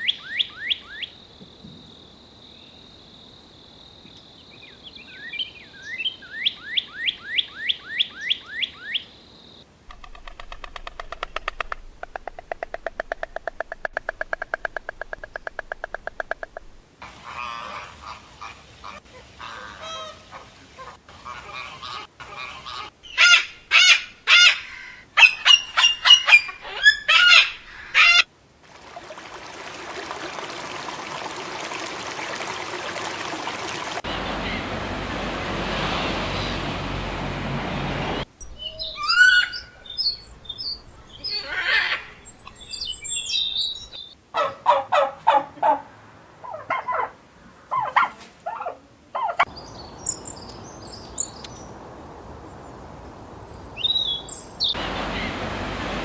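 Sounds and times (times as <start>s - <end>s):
bird calls: 4.1s - 28.3s, 34.0s - 45.4s, 49.2s - 56.0s.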